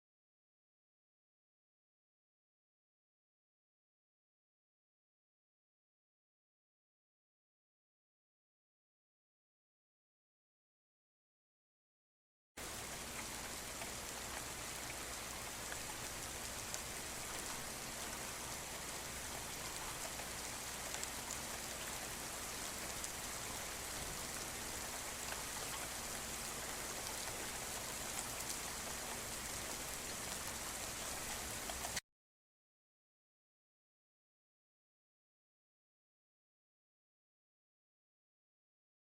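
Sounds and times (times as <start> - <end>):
steady rainfall: 12.6 - 32.0.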